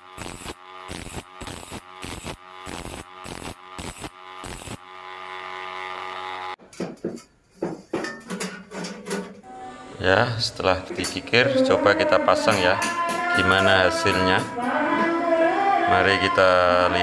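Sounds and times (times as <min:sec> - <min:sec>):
knocks: 0:06.7 - 0:08.6.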